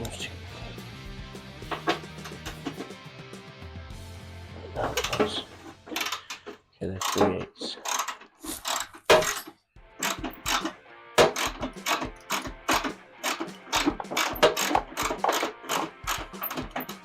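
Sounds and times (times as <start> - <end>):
background music with steady beat: 0.0 - 6.3, 8.6 - 17.0
ratchet wrench clicking: 4.9 - 6.4, 7.0 - 7.2, 7.8 - 9.4, 10.0 - 17.0.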